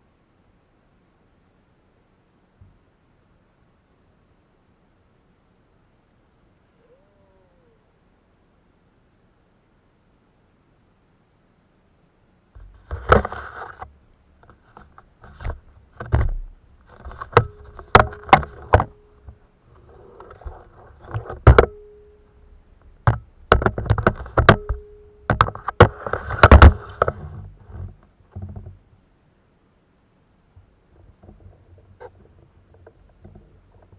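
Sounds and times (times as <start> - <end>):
rustling: 12.5 - 29.1, 30.5 - 33.9
things knocking in plastic kayak: 23.0 - 28.8.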